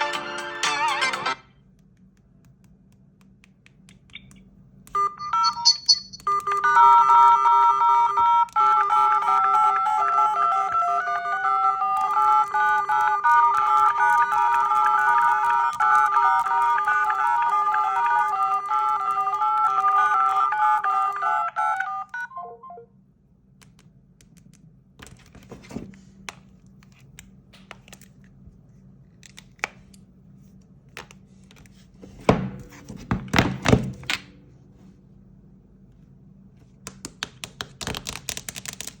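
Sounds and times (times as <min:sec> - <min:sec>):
phone ringtone melody: 0:05.0 - 0:11.9, 0:19.0 - 0:22.8.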